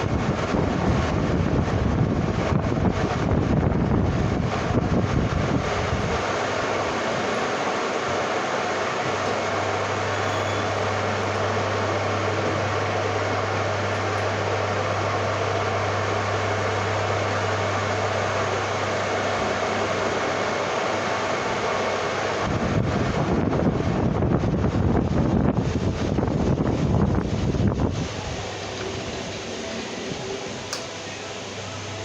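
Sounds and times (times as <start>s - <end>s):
wind rumbling on microphone: 0.0s - 10.0s, 22.4s - 29.5s
lathe running: 4.4s - 22.5s.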